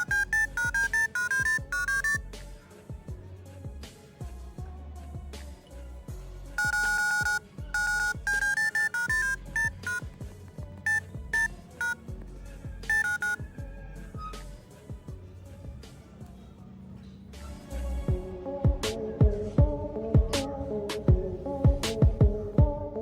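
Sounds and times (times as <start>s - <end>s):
high electronic beeps melody: 0.0s - 2.2s, 6.6s - 10.1s, 10.9s - 12.0s, 12.9s - 13.4s
music with low pulsing beat: 18.0s - 23.0s.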